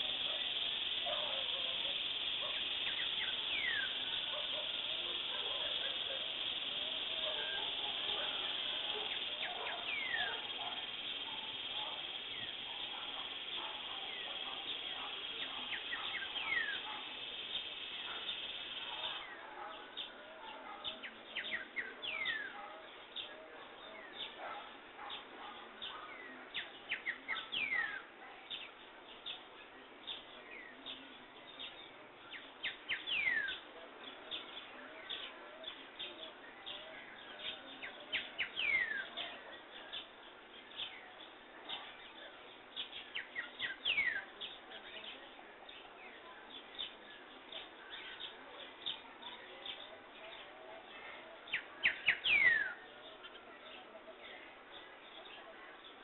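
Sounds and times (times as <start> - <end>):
steady high-pitched hiss: 0.0 - 20.2
wild birds chirping: 0.0 - 56.0.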